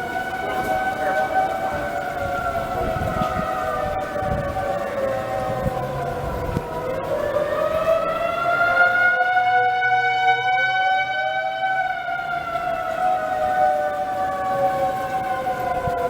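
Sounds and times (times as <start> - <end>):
civil defense sirens wailing: 0.0 - 16.0.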